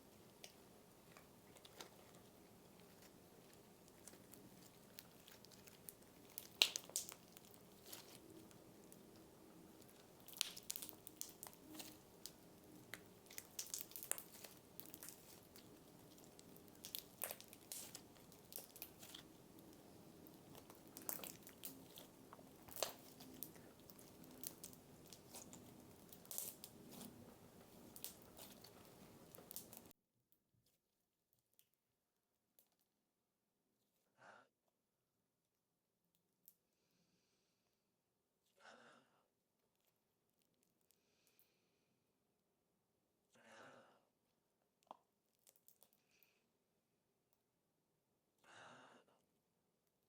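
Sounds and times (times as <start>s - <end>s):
slime crackling and popping: 0.2s - 29.9s.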